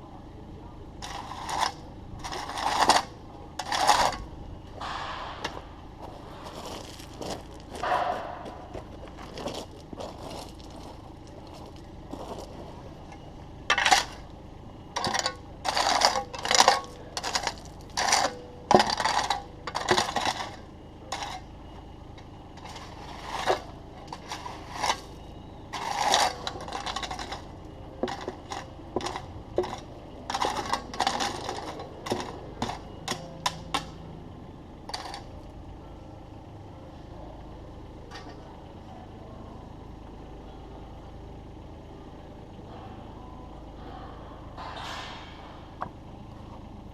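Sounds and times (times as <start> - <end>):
low hum: 0.0 - 46.9
loose stone crunching and clinking: 1.0 - 34.0, 34.8 - 35.6.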